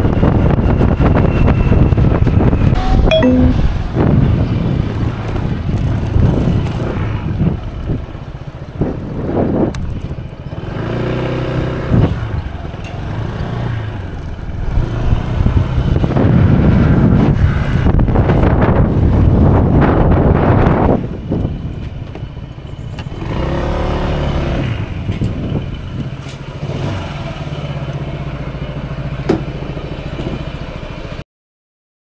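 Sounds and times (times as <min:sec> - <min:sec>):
wind noise on microphone: 0:00.0 - 0:10.2, 0:14.4 - 0:22.0
scooter engine hum: 0:04.0 - 0:17.8, 0:18.8 - 0:31.2.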